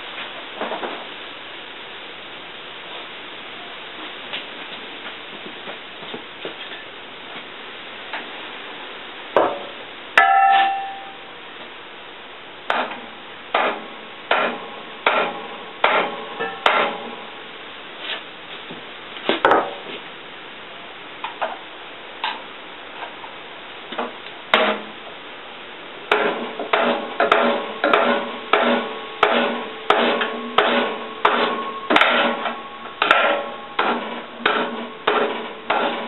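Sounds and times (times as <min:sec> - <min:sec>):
hammer on steel: 0:10.2 - 0:11.2, 0:12.7 - 0:17.0, 0:26.1 - 0:36.0.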